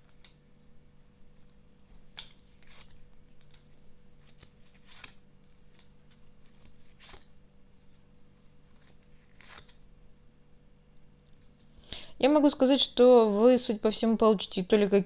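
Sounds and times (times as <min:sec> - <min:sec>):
cards rustling and slapping: 0:01.4 - 0:07.4, 0:08.6 - 0:09.9.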